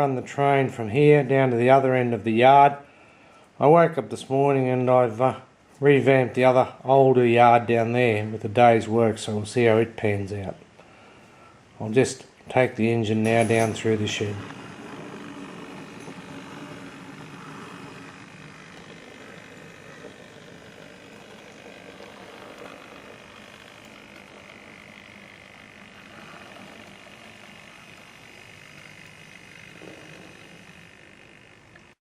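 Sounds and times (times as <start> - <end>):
small electric motor hum: 12.8 - 32.0
wheel and rail noise: 12.8 - 32.0.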